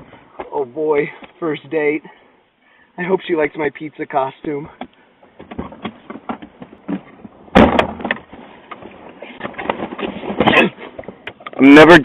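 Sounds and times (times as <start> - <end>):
door slamming: 7.5 - 8.2.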